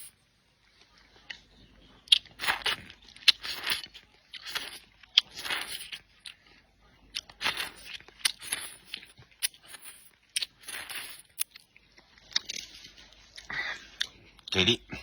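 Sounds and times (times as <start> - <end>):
crunchy bites: 2.1 - 6.5, 7.1 - 14.2
person chewing and slurping: 2.1 - 14.5.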